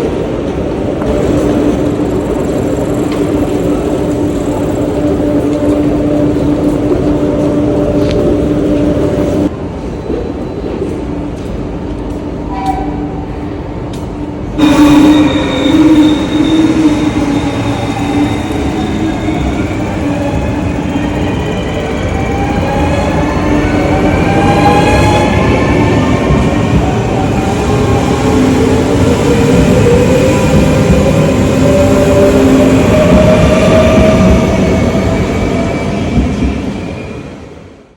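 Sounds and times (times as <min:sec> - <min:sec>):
train rumbling past platform: 0:00.0 - 0:37.9
steady squealing tones: 0:14.6 - 0:37.2.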